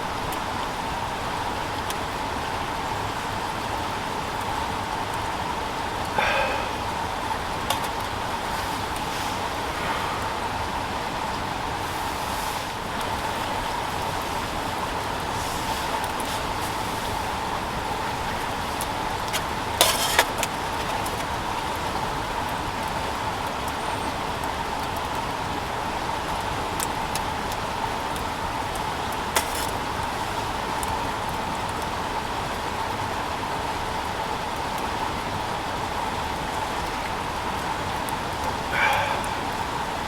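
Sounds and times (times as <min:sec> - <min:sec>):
steady hiss: 0:05.5 - 0:22.4.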